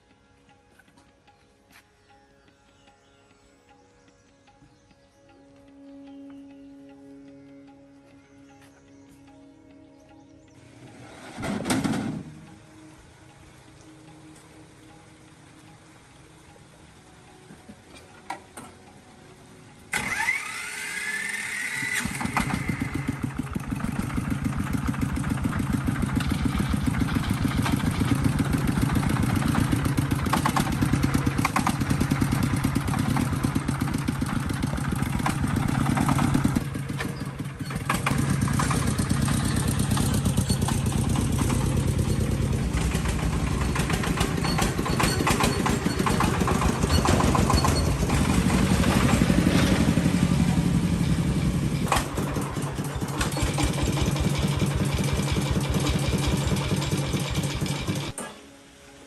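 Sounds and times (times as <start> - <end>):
diesel engine cranking and running: 5.3 - 58.3.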